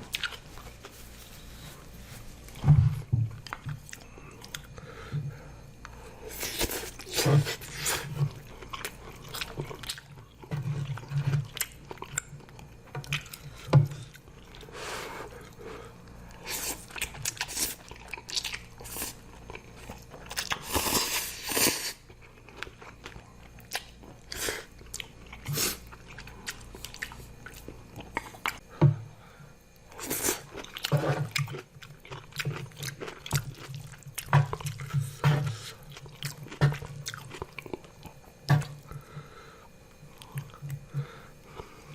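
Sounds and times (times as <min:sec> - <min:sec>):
person chewing and biting: 0:00.0 - 0:00.9, 0:06.3 - 0:14.7, 0:30.0 - 0:39.0.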